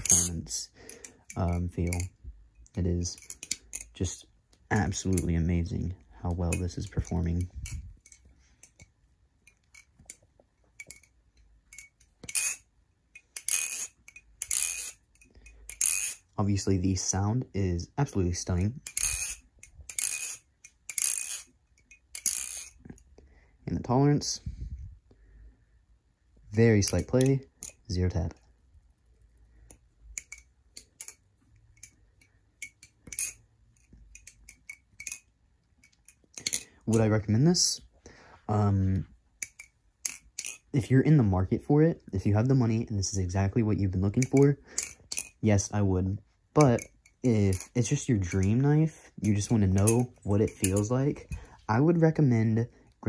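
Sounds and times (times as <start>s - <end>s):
butterfly knife metallic clacks: 49.2s - 51.3s.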